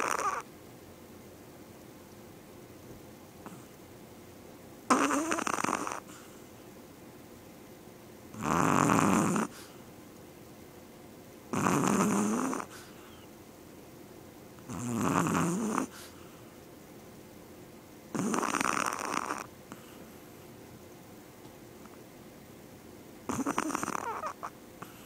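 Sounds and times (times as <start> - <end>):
dog snoring: 0.0 - 0.5, 3.4 - 3.7, 4.9 - 6.4, 8.3 - 9.8, 11.5 - 13.3, 14.6 - 16.3, 18.1 - 20.1, 23.3 - 25.0.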